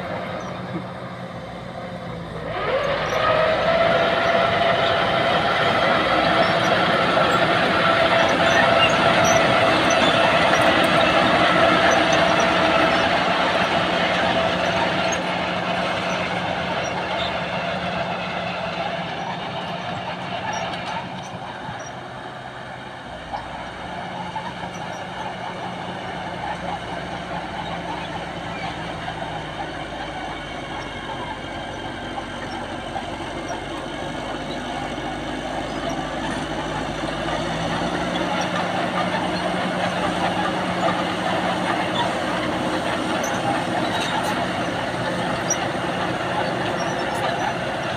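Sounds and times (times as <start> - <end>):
heavy vehicle engine humming: 0.0 - 47.9.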